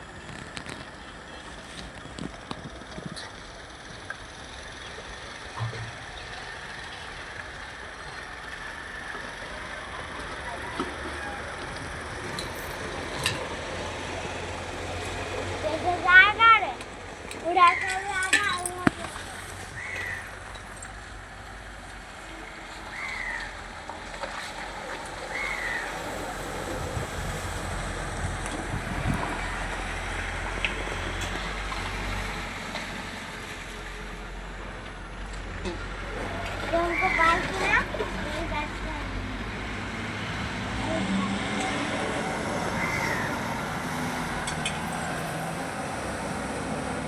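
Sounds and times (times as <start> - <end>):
low engine rumble: 0.0 - 47.0
faint voices: 0.8 - 23.0.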